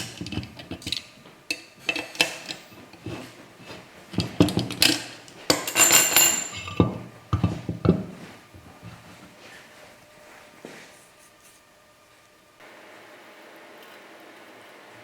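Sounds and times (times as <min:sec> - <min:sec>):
metal parts clinking and knocking: 0:00.0 - 0:08.1
ringing metallic scrape: 0:05.5 - 0:07.2.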